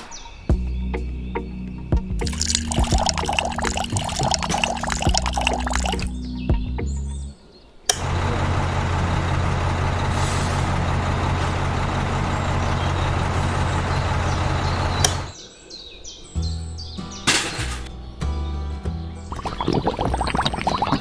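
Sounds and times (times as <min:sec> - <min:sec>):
heavy engine running: 0:08.0 - 0:15.3.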